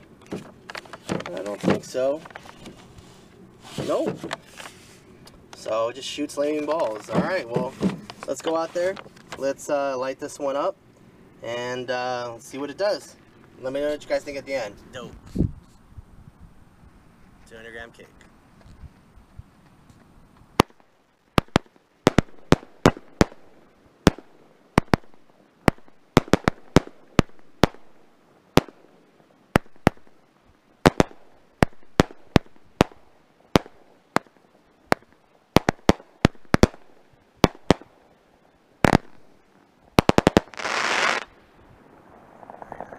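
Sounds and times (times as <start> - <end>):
firework crackle: 0.6 - 10.7, 19.6 - 42.9
firework bangs: 20.5 - 30.2, 30.8 - 38.2, 38.8 - 42.9.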